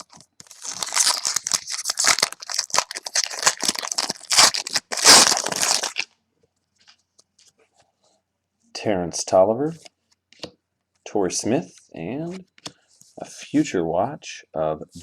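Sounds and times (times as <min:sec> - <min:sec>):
foil wrapper tearing and crinkling: 0:00.0 - 0:06.1.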